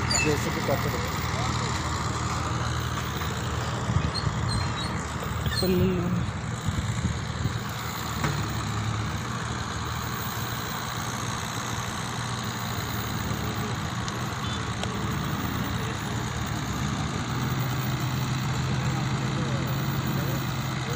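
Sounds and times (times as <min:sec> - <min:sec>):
diesel engine running: 0:00.0 - 0:20.9.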